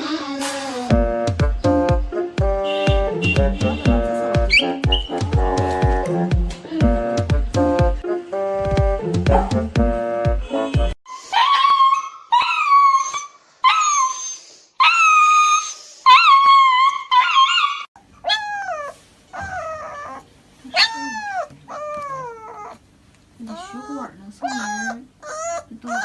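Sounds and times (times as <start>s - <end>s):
dog howling and whining: 11.1s - 22.8s, 23.5s - 26.0s.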